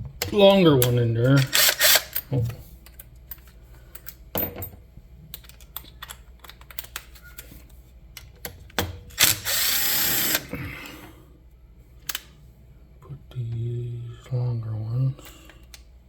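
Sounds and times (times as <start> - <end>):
power drill driving a bolt: 1.4 - 2.1, 9.2 - 10.5.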